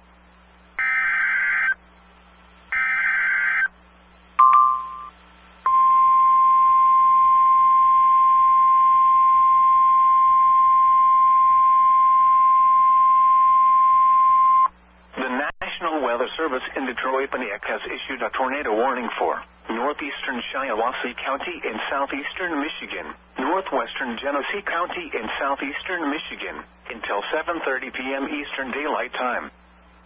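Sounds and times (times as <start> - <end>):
short beep: 4.4 - 11.1
steady single-pitch alert tone: 4.4 - 14.7.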